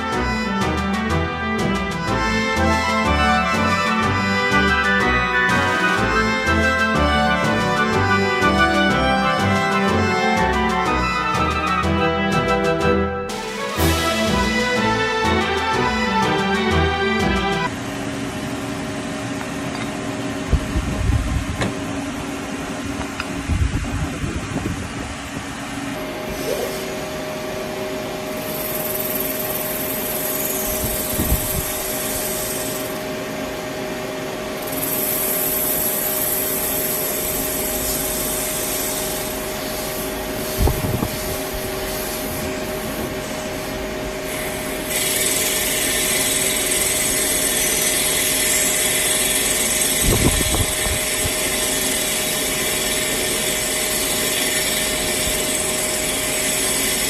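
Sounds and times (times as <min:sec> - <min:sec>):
hissing metal cutting: 0:00.0 - 0:17.7, 0:28.3 - 0:33.4, 0:34.5 - 0:57.0
machine hum: 0:00.0 - 0:57.0.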